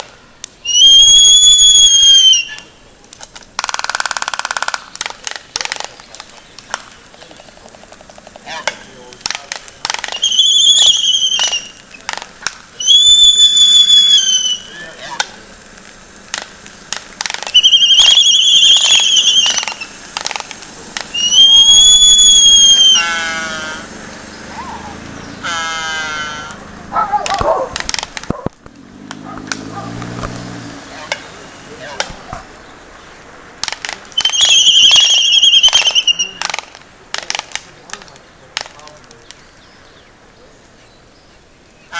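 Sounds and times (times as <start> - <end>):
albatross whistle-like calls: 0.6 - 2.8, 9.8 - 12.2, 12.8 - 15.2, 17.2 - 23.9, 24.5 - 27.4, 34.1 - 36.6
sharp clacks and rattles: 3.1 - 10.3, 11.4 - 12.7, 15.2 - 21.2, 27.2 - 30.5.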